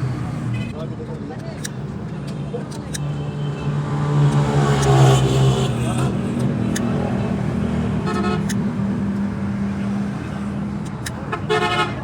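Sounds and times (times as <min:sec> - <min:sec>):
motorcycle horn toots: 0:08.0 - 0:08.6, 0:11.3 - 0:12.0.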